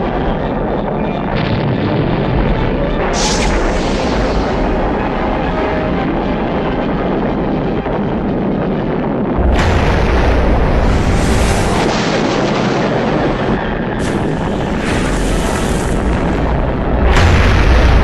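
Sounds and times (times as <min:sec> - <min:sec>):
explosion blasts: 0:01.3 - 0:18.0
deep rumbling roar: 0:09.3 - 0:18.0.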